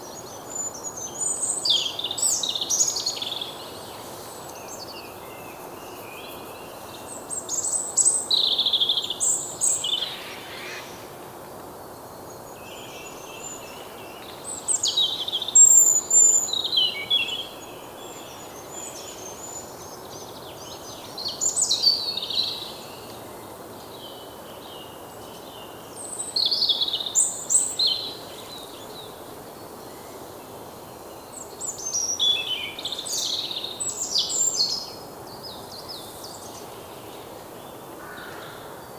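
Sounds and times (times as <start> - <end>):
outdoor background hiss: 0.0 - 38.9
songbird chirping song: 0.0 - 38.9.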